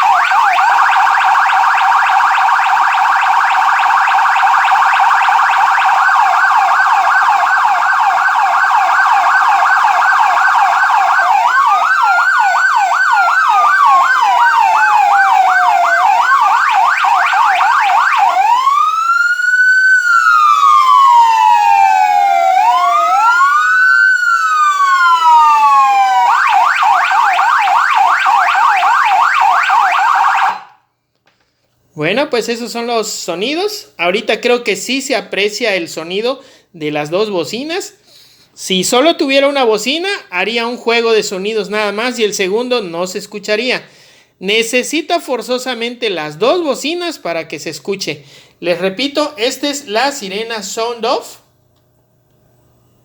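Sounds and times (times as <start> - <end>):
electronic siren yelping and wailing: 0.0 - 30.8.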